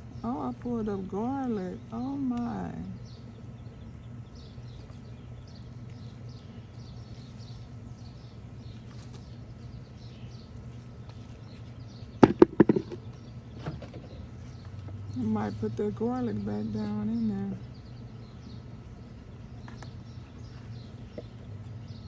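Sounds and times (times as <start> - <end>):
faint bird chirping: 0.0 - 22.0
steady low hum: 0.0 - 22.0
sharp knocks: 12.2 - 13.1.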